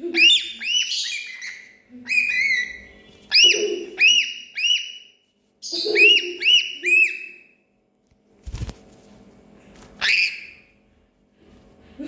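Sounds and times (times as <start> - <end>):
parrot squawk: 0.1 - 7.4.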